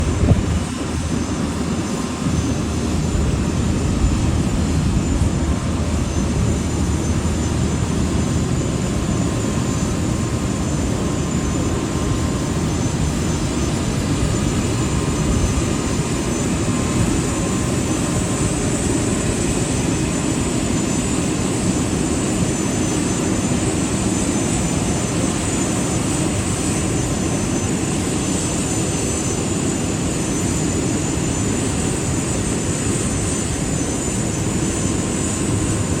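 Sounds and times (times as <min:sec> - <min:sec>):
high whine: 0:00.0 - 0:18.1
aircraft low rumble: 0:00.0 - 0:36.0.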